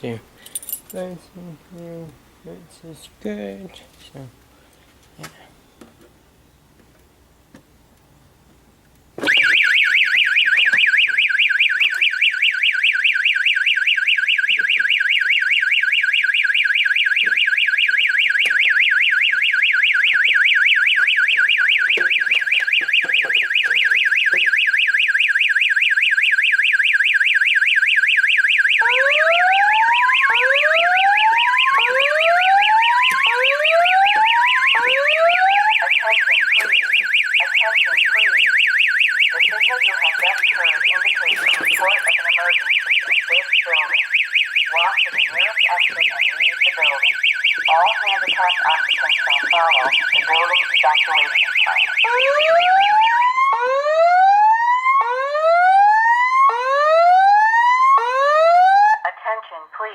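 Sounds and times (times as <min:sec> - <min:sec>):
whooping alarm tone: 0:09.3 - 0:58.8
warbling electronic alarm tone: 0:13.8 - 0:54.3.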